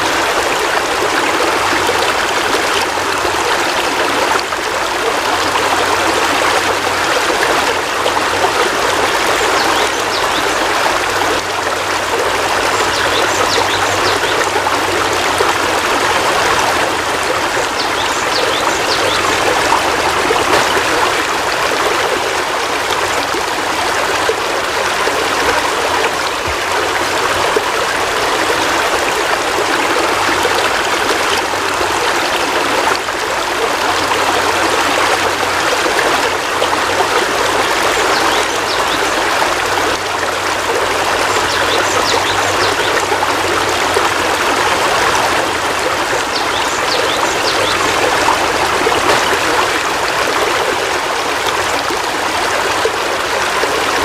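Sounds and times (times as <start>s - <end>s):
heavy rain falling: 43.0s - 53.9s.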